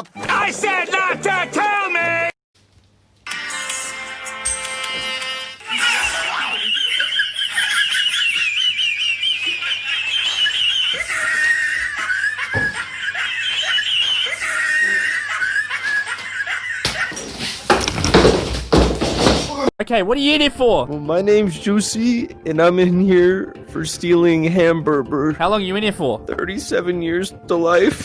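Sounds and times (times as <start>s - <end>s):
high-pitched wavering laughter: 5.6s - 17.3s.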